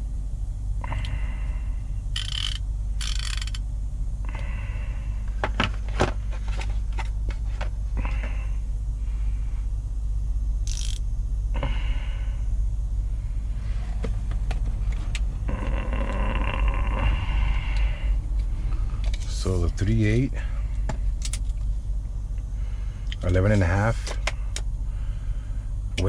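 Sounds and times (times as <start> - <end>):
steady low hum: 0.0 - 26.0
metal ratchets scraping and rustling: 2.2 - 3.6, 10.7 - 11.0, 21.2 - 21.6
sharp metal clicks and clinks: 2.2 - 3.6, 10.7 - 11.0, 21.2 - 21.6.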